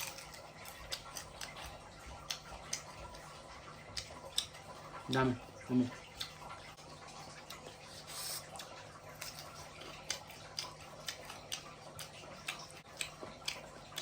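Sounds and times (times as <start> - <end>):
crunching of fried shrimp: 0.0 - 3.3.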